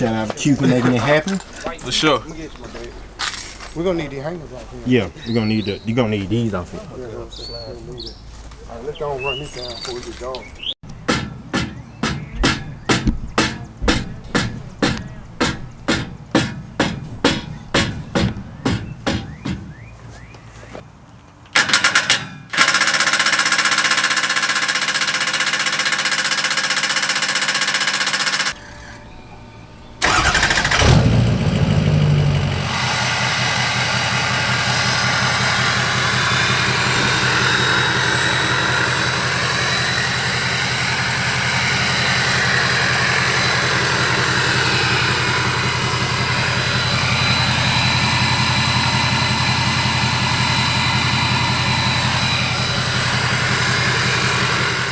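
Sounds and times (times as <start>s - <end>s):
diesel engine idling: 28.5s - 54.9s.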